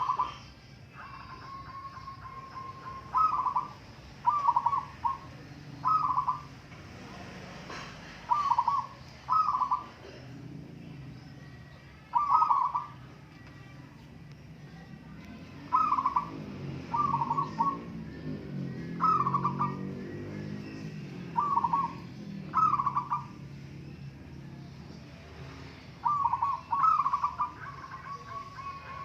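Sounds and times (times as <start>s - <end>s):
doves cooing: 0.0s - 6.7s, 7.6s - 11.2s, 12.1s - 13.0s, 15.4s - 24.4s, 26.0s - 29.0s.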